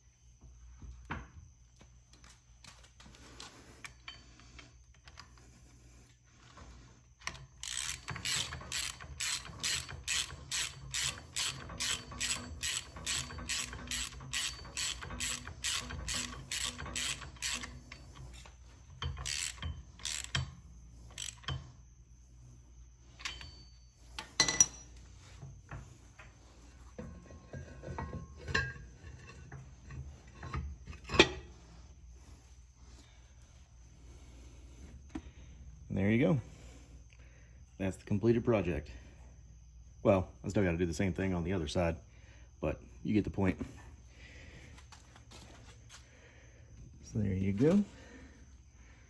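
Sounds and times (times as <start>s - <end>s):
ratchet wrench clicking: 7.2s - 21.6s.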